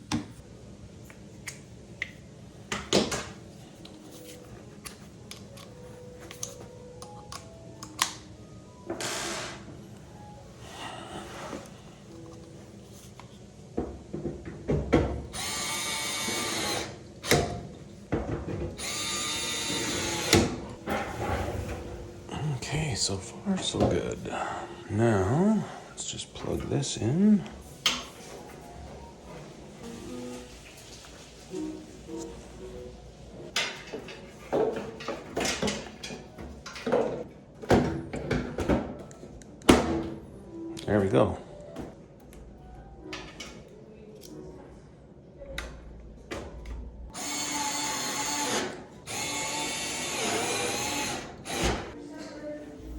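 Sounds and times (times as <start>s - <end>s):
power screwdriver whine: 9.0s - 9.6s, 15.4s - 16.9s, 18.8s - 20.5s, 47.1s - 51.8s.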